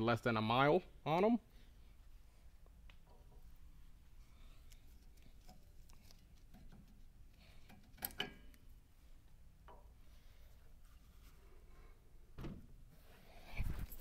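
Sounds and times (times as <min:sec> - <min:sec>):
metal parts clicking and tapping: 0:07.6 - 0:08.6.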